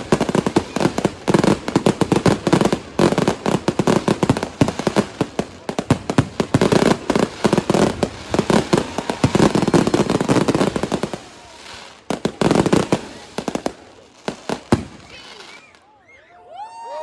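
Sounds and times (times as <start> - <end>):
fireworks bangs and cracks: 0.0 - 15.8.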